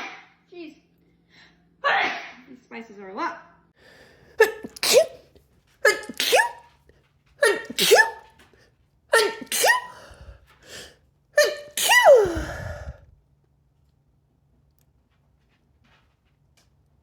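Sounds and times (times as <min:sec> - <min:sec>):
person sneezing: 0:04.3 - 0:06.7, 0:07.4 - 0:08.3, 0:09.1 - 0:13.0.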